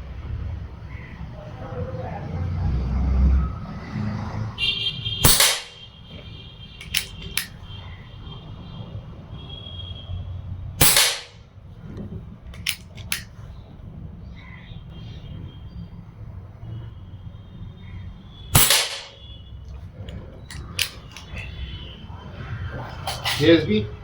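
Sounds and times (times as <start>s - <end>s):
air rifle shots: 5.2s - 5.9s, 6.8s - 7.5s, 10.8s - 11.4s, 12.6s - 13.3s, 18.6s - 19.3s, 20.5s - 21.5s, 23.1s - 23.5s
quiet clicks: 5.4s - 7.6s, 12.0s - 13.3s, 19.7s - 21.6s.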